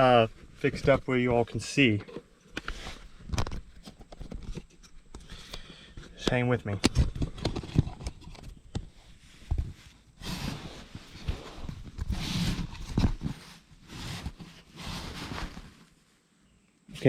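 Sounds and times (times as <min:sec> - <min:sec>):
camera handling rustling: 0:02.0 - 0:06.1.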